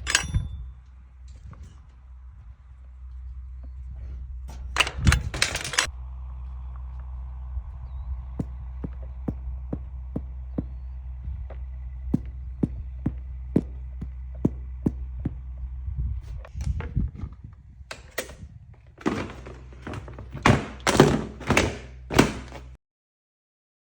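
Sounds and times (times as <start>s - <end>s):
steady low hum: 0.0s - 22.6s
heavy thunks: 8.4s - 15.6s, 19.0s - 22.8s.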